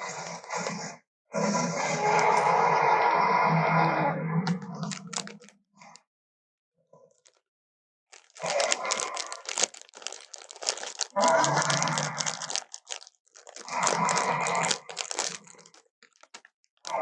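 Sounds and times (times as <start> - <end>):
harsh dinosaur roars: 0.0 - 4.8, 11.1 - 12.4.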